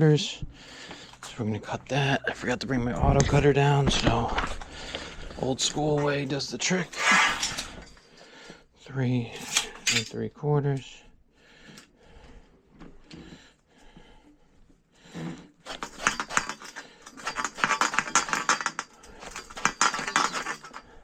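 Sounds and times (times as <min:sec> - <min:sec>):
rasping pipe cutting strokes: 0:15.6 - 0:21.0.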